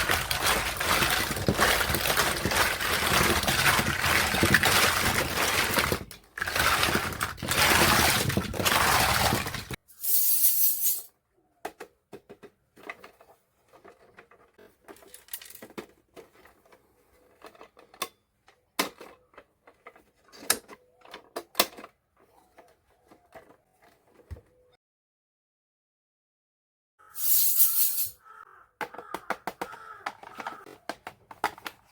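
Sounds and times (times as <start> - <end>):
toy kitchen pieces clicking: 0.0 - 11.1, 11.7 - 23.6, 27.1 - 31.9
short high hiss: 27.2 - 28.1.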